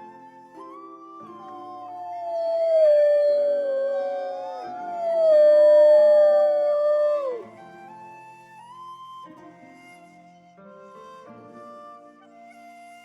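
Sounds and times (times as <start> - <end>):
soft flute music: 0.0 - 13.0
wolves howling: 1.4 - 7.5.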